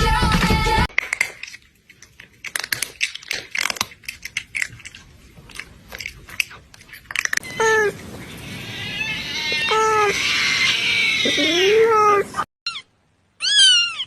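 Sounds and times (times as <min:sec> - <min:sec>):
cat chewing and crunching: 0:00.9 - 0:08.2
cat meowing: 0:07.4 - 0:14.0.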